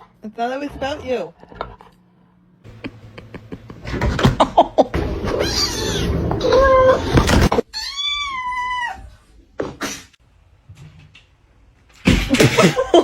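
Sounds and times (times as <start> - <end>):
cat meowing: 5.3 - 9.0.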